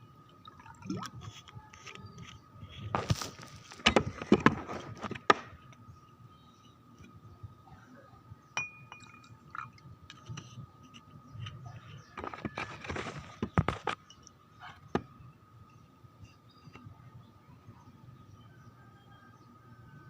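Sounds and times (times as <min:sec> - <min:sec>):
glassware clinking: 0:08.6 - 0:09.7.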